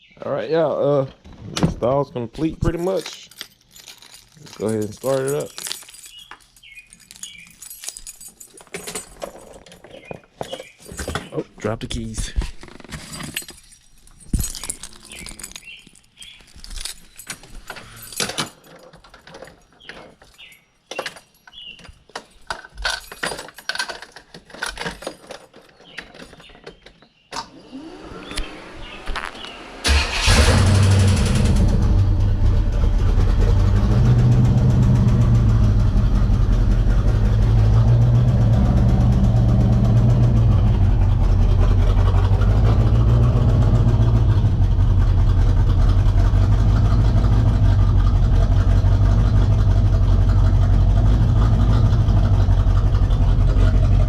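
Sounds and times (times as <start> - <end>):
handling clicks and knocks: 2.4 - 27.4
car engine cranking and running: 27.8 - 54.0.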